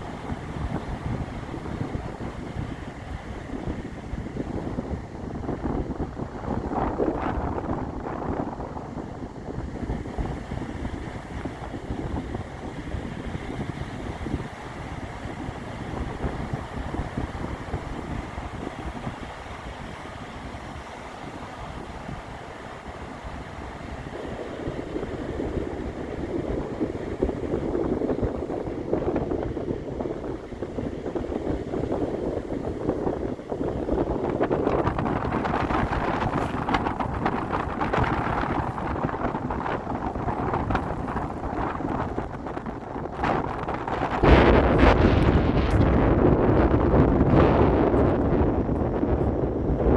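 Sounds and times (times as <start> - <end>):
wind rumbling: 0.0 - 13.1, 24.6 - 49.9
waves breaking on beach: 0.0 - 46.1
wind buffeting microphone: 0.0 - 49.9.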